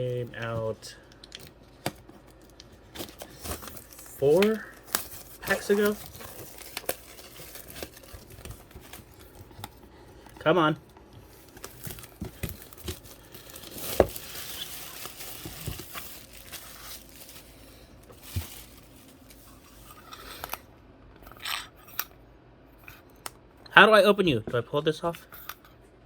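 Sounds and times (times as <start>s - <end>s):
packaging crinkling: 0.4s - 20.6s.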